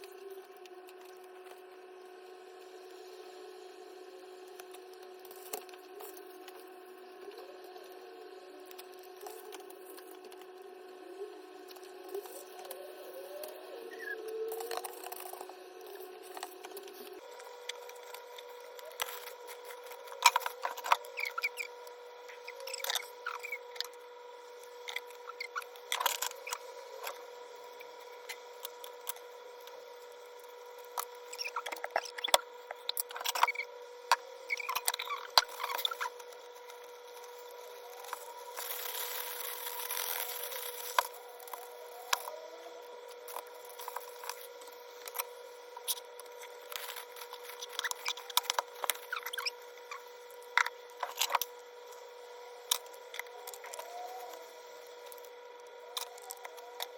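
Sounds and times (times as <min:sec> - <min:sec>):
faint steady hum: 0:00.0 - 0:56.9.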